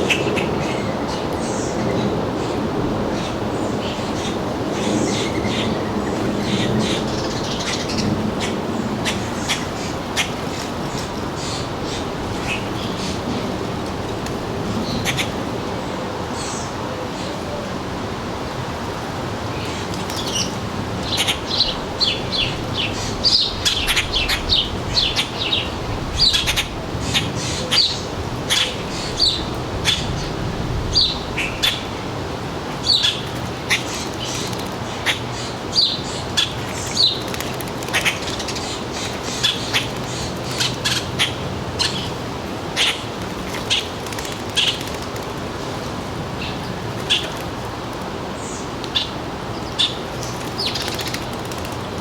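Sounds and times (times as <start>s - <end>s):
small birds chirping: 19.5s - 31.9s, 32.8s - 42.2s, 48.4s - 52.0s.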